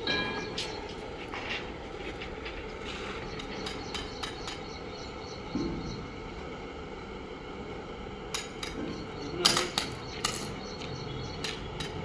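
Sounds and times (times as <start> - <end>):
steady machine hum: 0.0 - 12.0.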